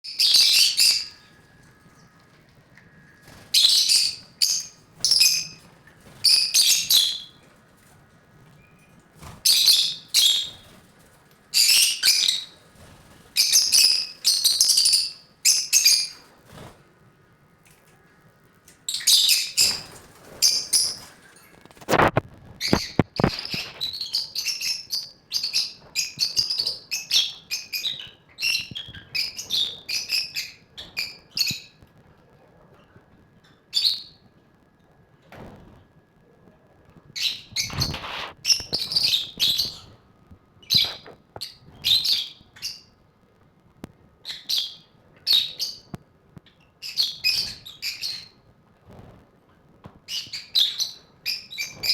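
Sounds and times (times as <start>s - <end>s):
lovebirds chirping: 0.1s - 7.5s, 8.6s - 10.8s, 11.5s - 16.3s, 18.9s - 21.6s, 37.2s - 40.0s.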